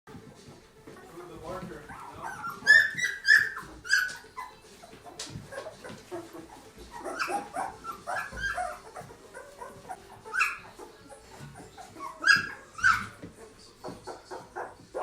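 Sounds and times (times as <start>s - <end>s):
puppies whimpering: 0.8s - 15.0s.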